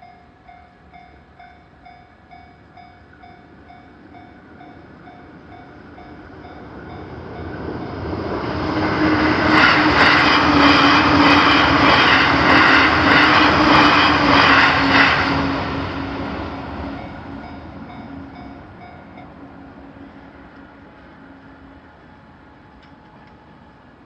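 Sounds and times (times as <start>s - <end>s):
level crossing warning bell: 0.0s - 8.2s, 16.9s - 19.4s
train wheels clattering: 4.2s - 19.3s.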